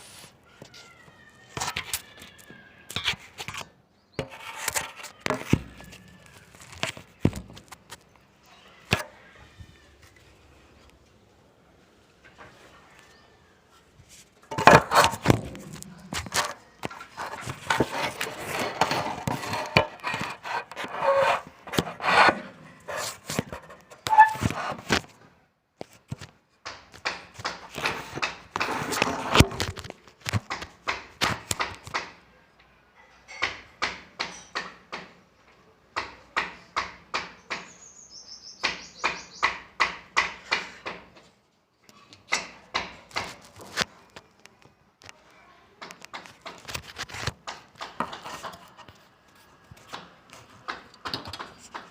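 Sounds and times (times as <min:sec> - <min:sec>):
saw strokes back and forth: 0:17.1 - 0:23.3
hand tools knocking on wood: 0:38.6 - 0:41.2.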